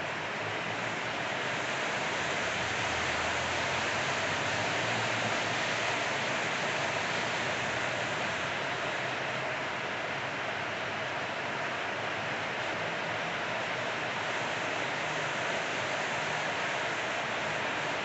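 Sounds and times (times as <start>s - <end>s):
rain falling: 0.0s - 10.2s, 11.0s - 18.0s.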